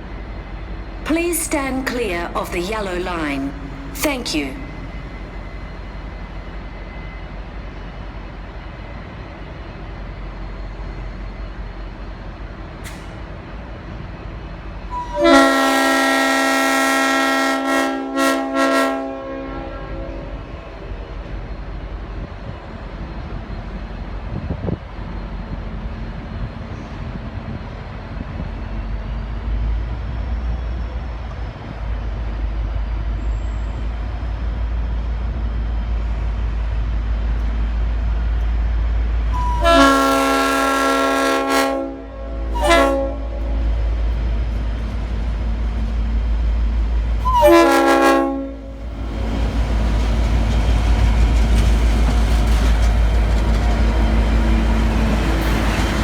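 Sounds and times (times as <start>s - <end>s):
locomotive air horn blasts: 14.9s - 20.4s, 39.4s - 43.8s, 47.2s - 48.7s
locomotive engine running: 42.6s - 56.0s.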